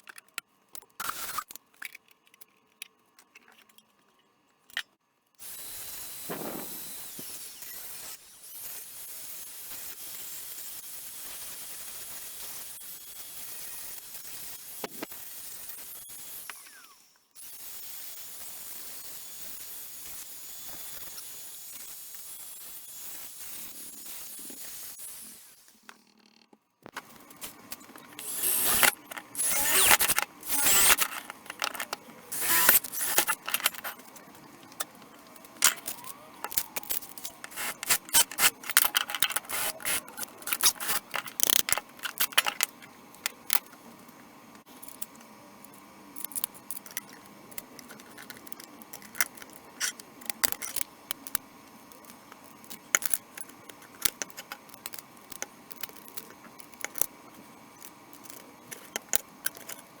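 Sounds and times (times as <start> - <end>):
sharp clicks and knocks: 25.9 - 43.8
scraping and rattling: 27.4 - 43.6
clinking and clattering handling: 28.0 - 43.4.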